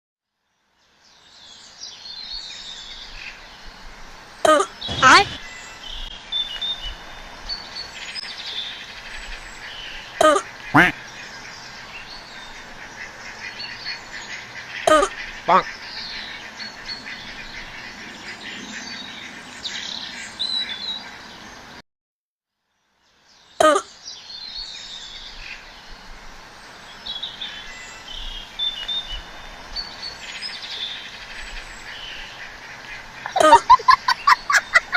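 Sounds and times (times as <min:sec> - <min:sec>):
birds chirping and singing: 0:27.0 - 0:34.9.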